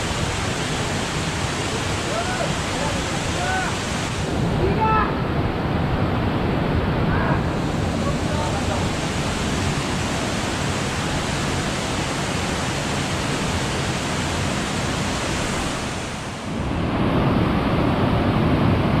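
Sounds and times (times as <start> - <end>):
water rushing over rapids: 0.0 - 19.0.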